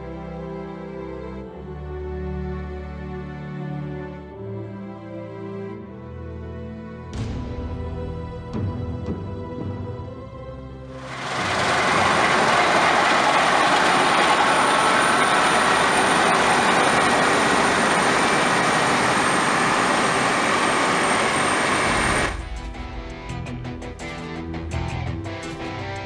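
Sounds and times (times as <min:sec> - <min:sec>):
combine harvester running: 0:11.0 - 0:22.5.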